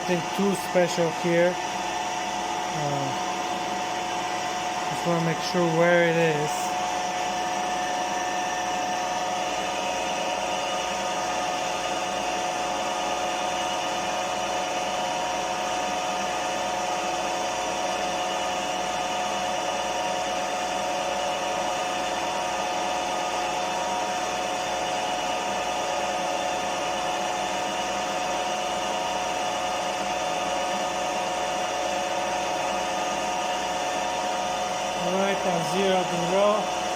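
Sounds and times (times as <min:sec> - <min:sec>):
milling machine running: 0:00.0 - 0:15.2, 0:31.9 - 0:36.9.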